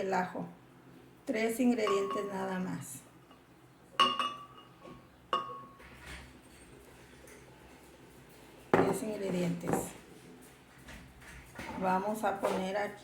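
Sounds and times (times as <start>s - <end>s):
glass clinking with ringing: 1.8s - 2.4s, 4.0s - 5.8s.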